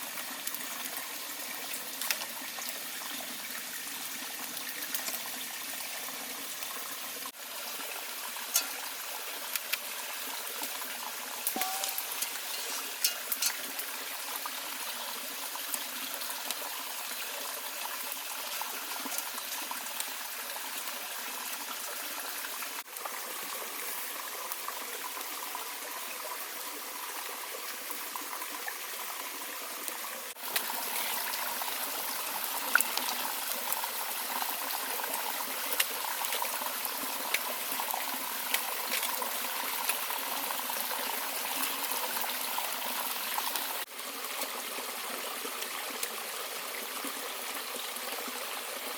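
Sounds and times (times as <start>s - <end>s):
stream trickling: 0.0s - 48.9s
small water splashes: 30.3s - 46.4s.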